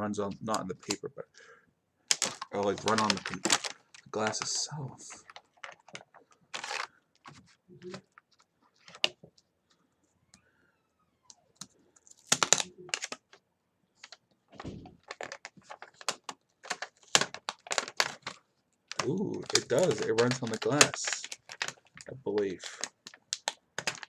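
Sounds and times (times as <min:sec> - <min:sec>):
plastic keyboard parts clattering: 0:02.1 - 0:04.4, 0:05.0 - 0:09.2, 0:14.0 - 0:24.0.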